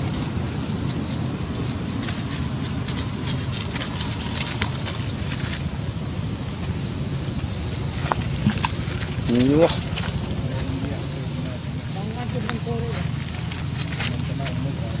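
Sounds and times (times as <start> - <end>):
faint clicks: 2.0 - 5.7, 7.9 - 11.0.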